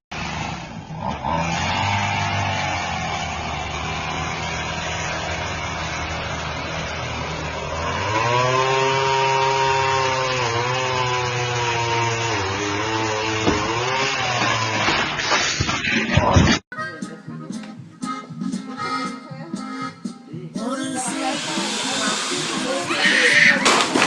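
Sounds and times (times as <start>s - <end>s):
chainsaw engine revving: 0.1s - 15.5s, 21.0s - 24.0s.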